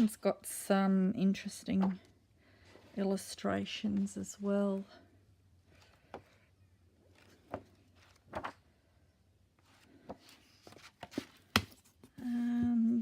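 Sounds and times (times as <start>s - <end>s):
pages rustling: 7.1s - 8.8s, 9.6s - 12.2s
soft taps of books: 10.0s - 12.2s.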